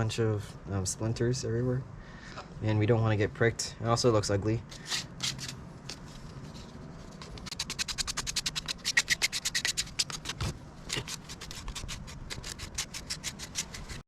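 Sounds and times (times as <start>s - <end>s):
sandpaper rubbing on wood: 7.2s - 14.0s.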